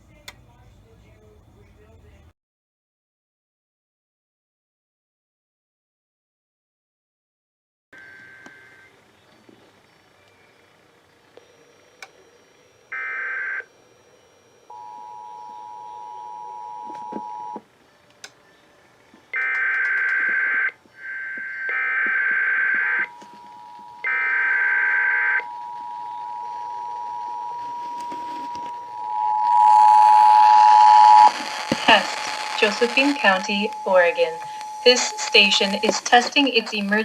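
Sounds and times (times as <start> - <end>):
two-tone attention signal: 11.4 - 17.6, 19.3 - 37.0
digital header bursts: 30.3 - 37.0.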